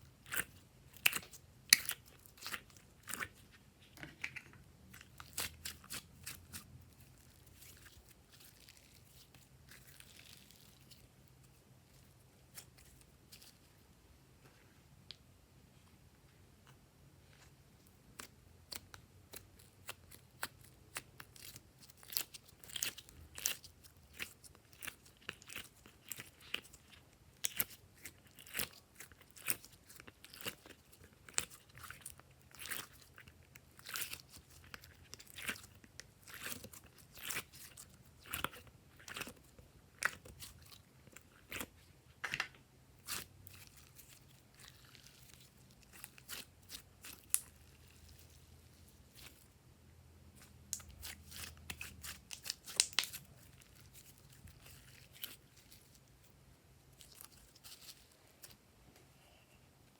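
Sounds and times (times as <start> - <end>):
sticky pops and crackles: 51.7 - 53.3.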